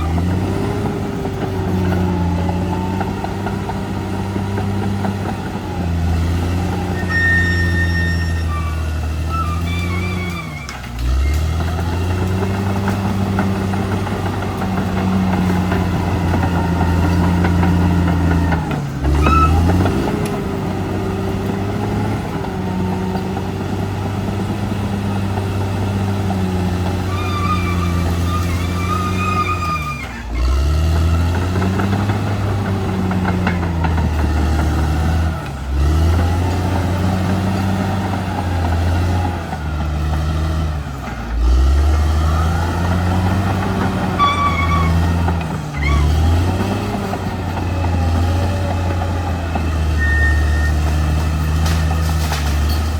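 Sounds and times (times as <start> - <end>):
bulldozer diesel engine running: 0.0 - 52.9
brief high squeals: 7.0 - 11.4, 27.1 - 30.5, 44.2 - 45.2, 49.8 - 51.0.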